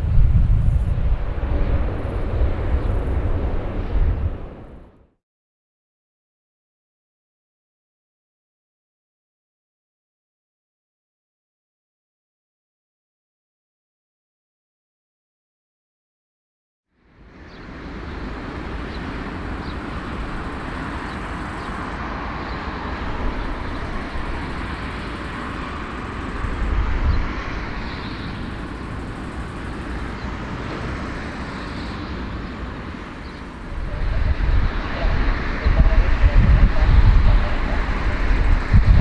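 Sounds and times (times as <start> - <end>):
rumbling vehicle noise: 0.0 - 5.0, 17.1 - 39.0.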